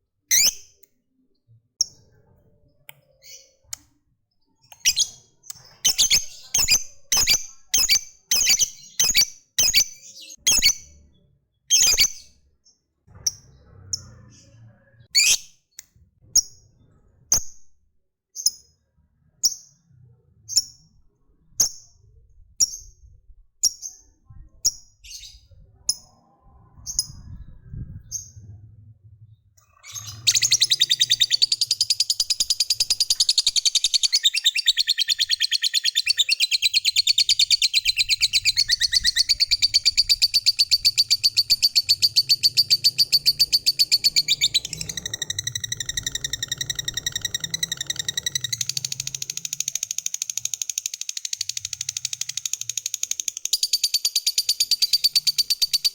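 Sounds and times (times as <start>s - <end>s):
bird high chirps: 0.3s - 0.8s, 4.4s - 12.5s, 13.1s - 15.5s, 29.6s - 55.9s
bird rattling chatter: 43.4s - 55.9s.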